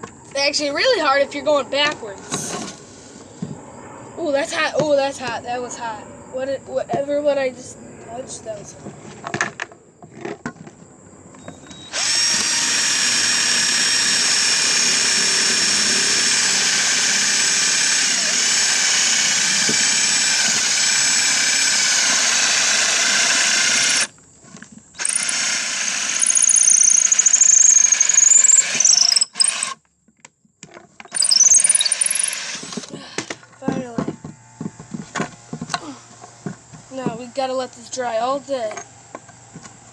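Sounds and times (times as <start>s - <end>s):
power drill whining: 11.4s - 24.2s, 25.0s - 29.8s, 31.0s - 36.0s.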